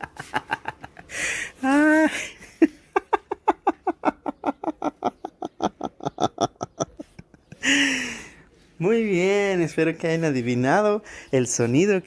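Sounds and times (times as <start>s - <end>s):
man laughing: 0.0s - 8.4s.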